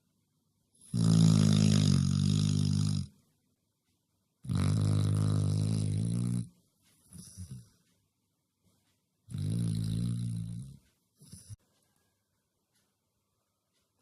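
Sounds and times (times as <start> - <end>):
puppy snoring: 0.8 - 3.2, 4.4 - 7.8, 9.3 - 11.6.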